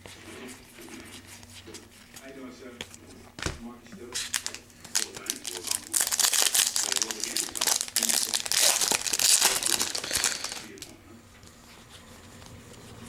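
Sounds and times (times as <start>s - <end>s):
wrapper crinkling: 4.2s - 11.0s.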